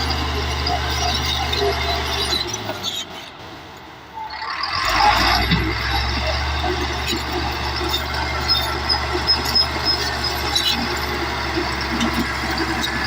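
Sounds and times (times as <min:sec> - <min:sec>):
bulldozer diesel engine droning: 0:00.0 - 0:13.0
high squeaks: 0:04.3 - 0:13.0.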